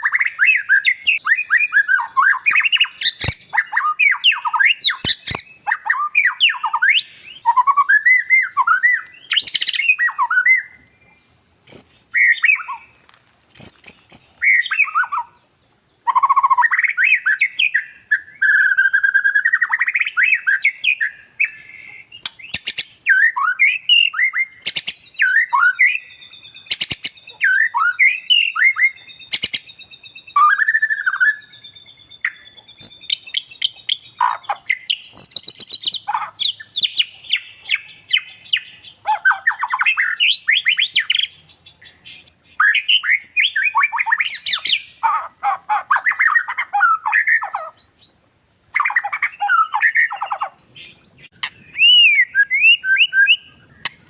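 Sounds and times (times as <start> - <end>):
bird singing whistled phrases: 0.0 - 12.9, 13.6 - 15.4, 16.1 - 41.3, 41.9 - 45.2, 48.8 - 54.0
bird clicks: 3.1 - 3.5, 4.9 - 5.5, 53.8 - 54.0.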